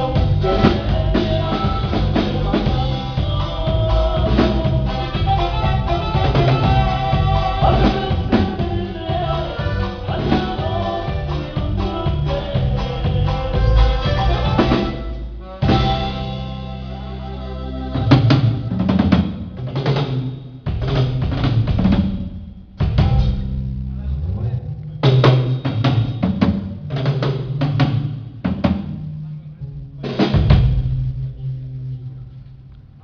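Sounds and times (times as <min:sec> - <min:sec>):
drum hits: 0:00.0 - 0:16.6, 0:17.9 - 0:23.7, 0:25.0 - 0:31.4
live band playing: 0:00.0 - 0:32.8
held bass notes: 0:00.0 - 0:33.0.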